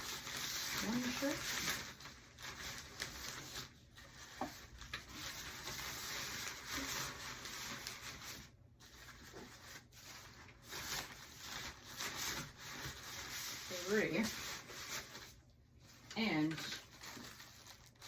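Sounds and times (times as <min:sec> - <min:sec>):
rustling and rubbing of clothing: 0:00.0 - 0:18.0.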